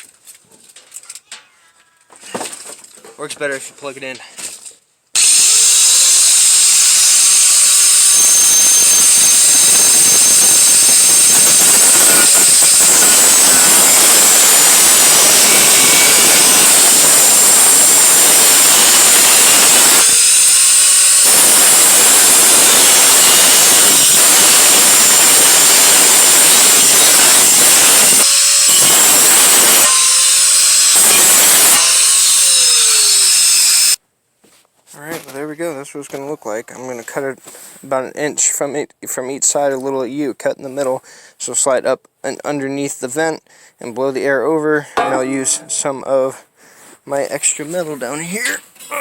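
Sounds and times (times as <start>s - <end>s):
power tool cutting sheet metal: 5.2s - 34.0s.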